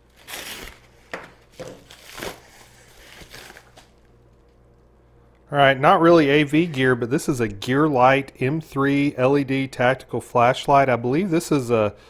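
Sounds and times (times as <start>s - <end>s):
packaging crinkling and rustling: 0.0s - 4.6s.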